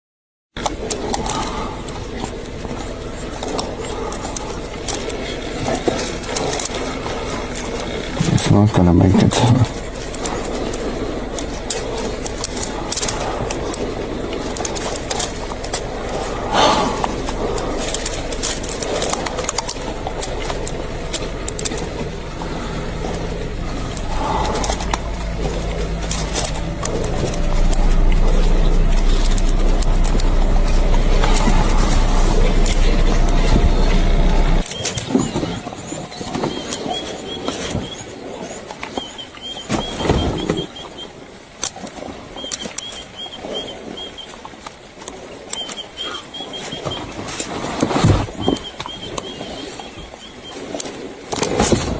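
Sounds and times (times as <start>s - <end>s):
outdoor background noise: 0.5s - 51.9s
vehicle engine idling: 0.6s - 35.4s
sharp clicks: 9.4s - 16.2s, 16.9s - 22.2s, 23.2s - 35.1s, 44.6s - 47.5s
small bird chirping: 34.7s - 41.1s, 45.5s - 47.0s, 48.3s - 50.6s.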